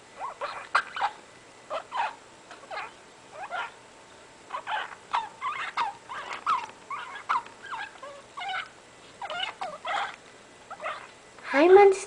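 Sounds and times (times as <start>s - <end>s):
rat wheezing with squeaky noises: 0.2s - 3.8s, 4.5s - 11.2s.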